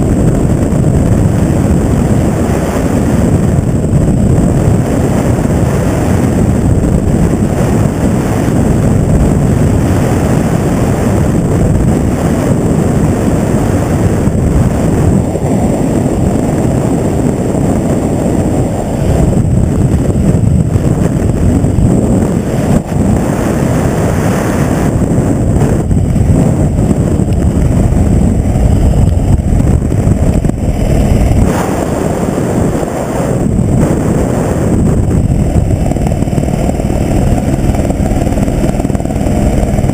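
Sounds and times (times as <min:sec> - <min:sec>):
helicopter rumble: 0:00.0 - 0:39.9
wind buffeting microphone: 0:00.0 - 0:39.9.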